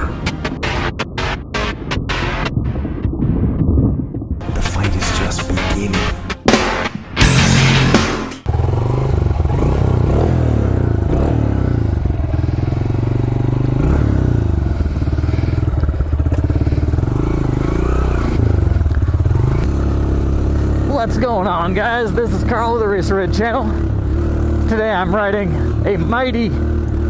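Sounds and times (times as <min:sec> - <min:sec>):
loud rushing burst: 0:00.0 - 0:03.6, 0:04.4 - 0:09.7
motorcycle engine running: 0:06.5 - 0:27.0.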